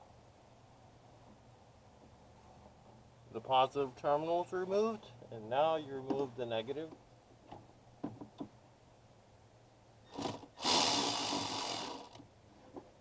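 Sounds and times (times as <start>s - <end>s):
electric ratchet motor running: 10.1s - 12.2s.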